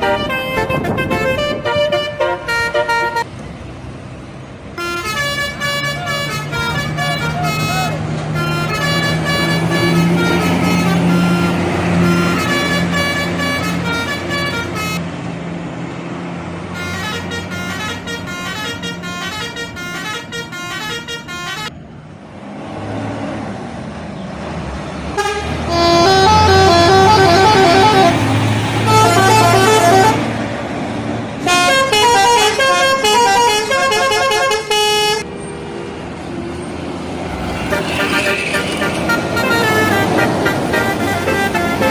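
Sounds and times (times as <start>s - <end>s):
bus horns playing tunes: 0.0s - 3.3s, 4.8s - 15.0s, 16.7s - 21.8s, 25.1s - 30.5s, 31.4s - 35.3s, 37.4s - 41.9s
bus engine running: 0.0s - 41.9s.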